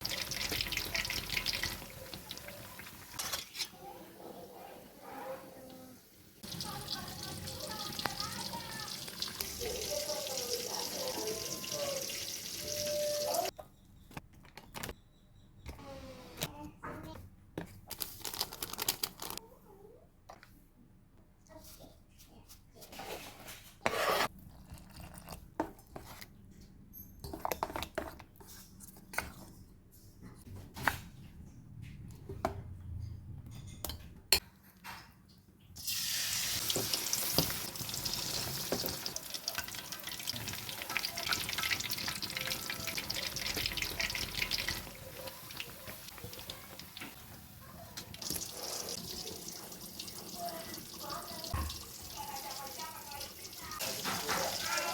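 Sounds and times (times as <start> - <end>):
utensils and bowls clinking: 6.4 - 13.7, 36.6 - 54.9.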